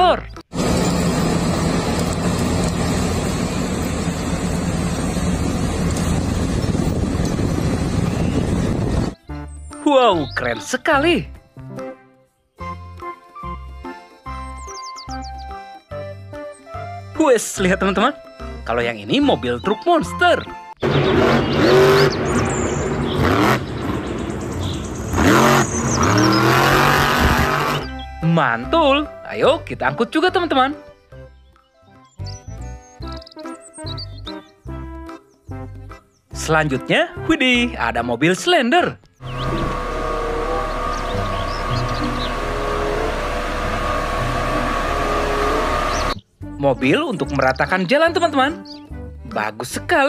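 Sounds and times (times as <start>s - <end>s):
excavator engine rumbling: 0.5s - 9.2s, 20.8s - 28.0s, 39.2s - 46.3s.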